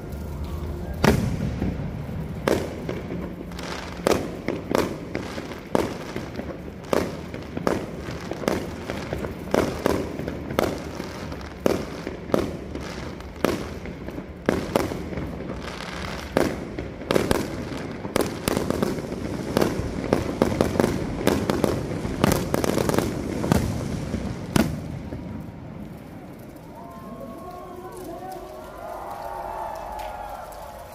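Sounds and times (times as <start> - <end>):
fireworks bursting with sharp bangs: 0.0 - 26.9.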